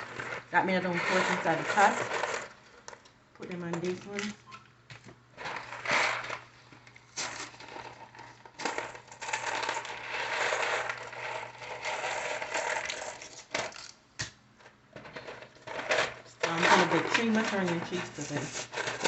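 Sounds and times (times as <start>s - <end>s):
packaging crinkling and rustling: 5.0s - 14.0s.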